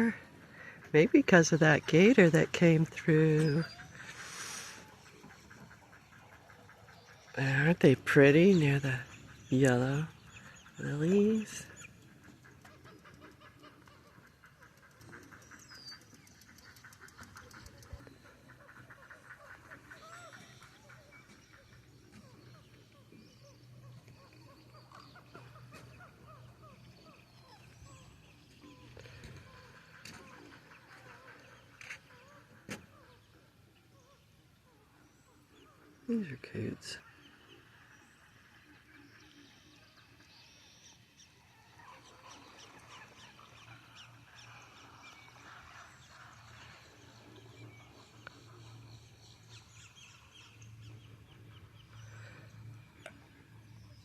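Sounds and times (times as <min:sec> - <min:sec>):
coots calling: 0:00.0 - 0:07.4, 0:08.6 - 0:36.3
birds chirping: 0:00.0 - 0:54.0.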